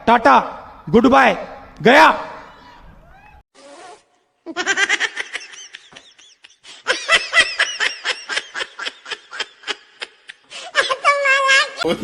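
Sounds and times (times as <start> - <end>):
high-pitched laughter: 4.5 - 11.9.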